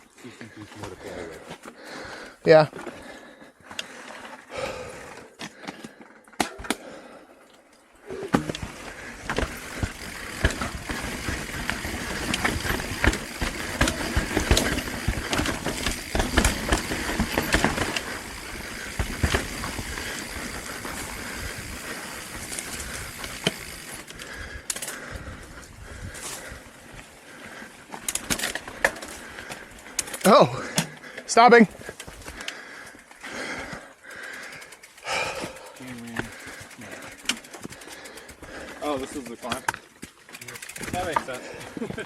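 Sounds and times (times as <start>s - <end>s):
bike rolling over rough trail: 8.0s - 42.0s.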